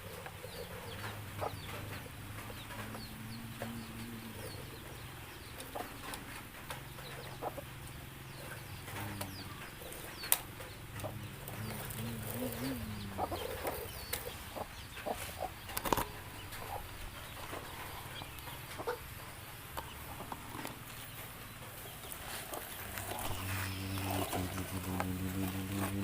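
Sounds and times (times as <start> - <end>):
chickens clucking: 0.0 - 26.0
low engine hum: 0.6 - 15.0, 21.2 - 26.0.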